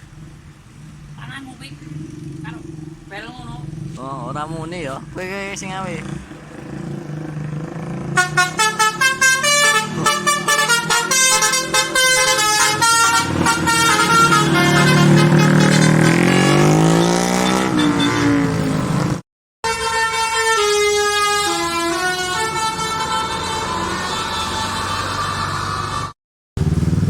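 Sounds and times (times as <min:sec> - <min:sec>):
bus multi-tone horn playing a tune: 0:08.2 - 0:18.7, 0:19.6 - 0:26.2.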